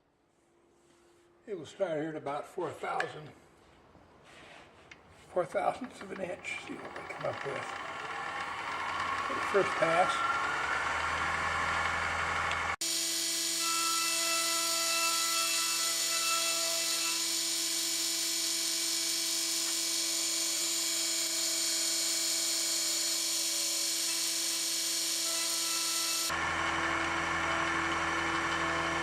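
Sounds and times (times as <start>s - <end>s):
mill motor whine: 5.8s - 14.0s, 17.1s - 29.0s.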